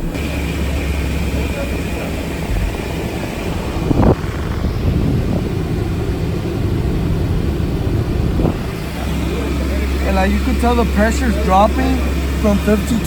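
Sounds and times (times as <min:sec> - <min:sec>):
air conditioning blower noise: 0:00.0 - 0:13.0
car engine running: 0:00.0 - 0:13.0.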